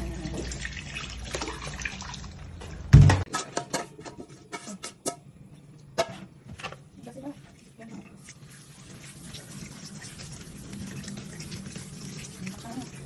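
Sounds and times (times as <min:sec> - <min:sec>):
loud thump: 0:02.9 - 0:03.3.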